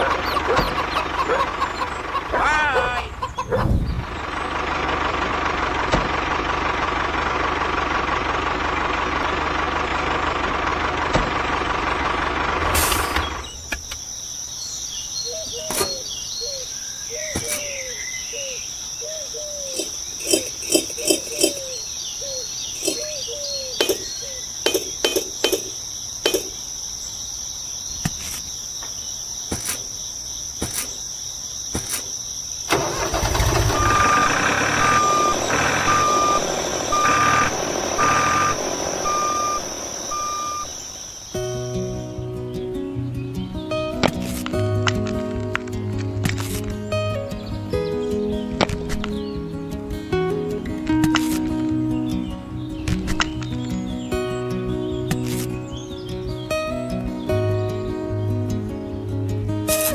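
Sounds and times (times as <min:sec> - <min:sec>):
high insect trill: 0:12.9 - 0:42.5
loud dense steady noise: 0:33.8 - 0:41.4.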